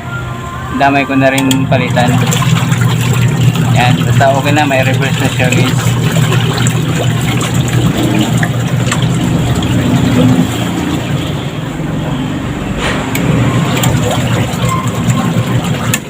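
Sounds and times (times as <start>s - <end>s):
washing machine motor hum: 0.0s - 16.0s
water swishing: 1.1s - 12.0s, 13.2s - 16.0s.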